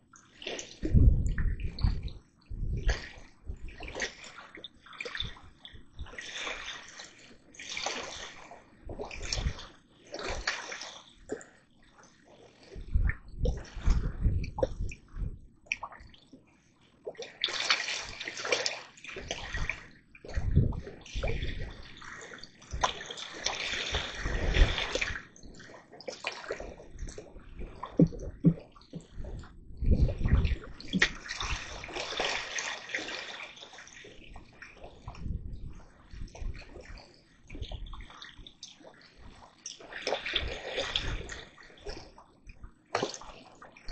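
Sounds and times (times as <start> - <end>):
water sloshing and splashing: 0.0 - 43.9
low bumps and knocks: 27.9 - 31.1.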